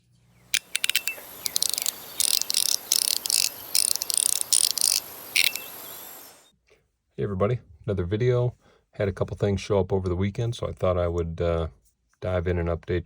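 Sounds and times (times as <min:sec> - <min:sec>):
fidget toy clicking and rattling: 0:00.5 - 0:06.3.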